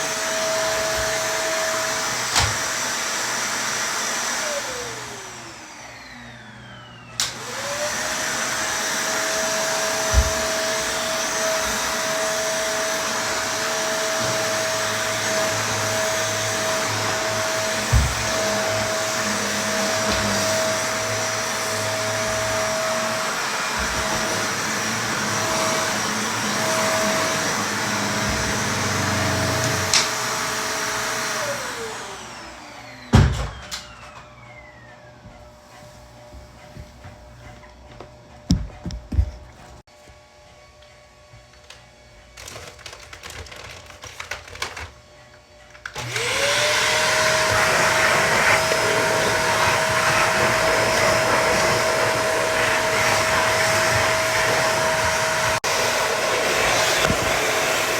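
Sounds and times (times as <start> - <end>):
vacuum cleaner motor whine: 0.0 - 57.9.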